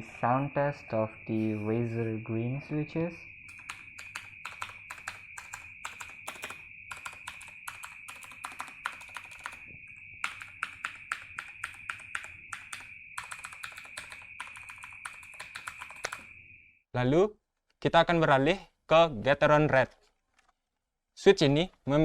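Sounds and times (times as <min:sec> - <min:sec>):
clicky keyboard keys pressed: 0:03.5 - 0:16.3.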